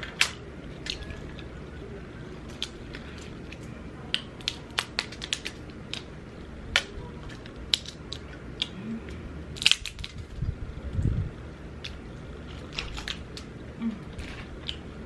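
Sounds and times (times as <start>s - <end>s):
chewing and mouth smacking: 6.8s - 10.4s, 11.8s - 15.0s.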